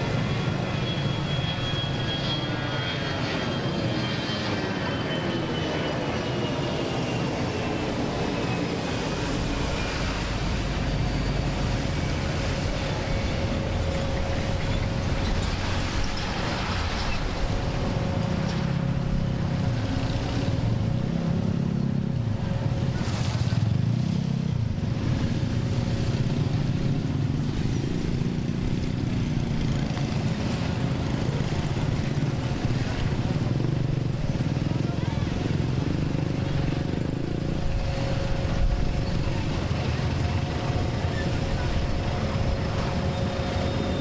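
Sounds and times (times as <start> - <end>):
low wavering drone: 0.0 - 23.4, 24.2 - 44.0
engine hum and rumble: 0.0 - 44.0.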